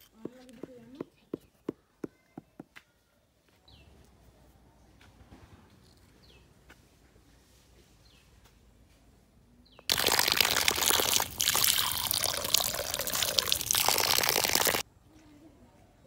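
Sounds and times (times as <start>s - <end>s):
water pouring and splashing: 9.9s - 14.8s.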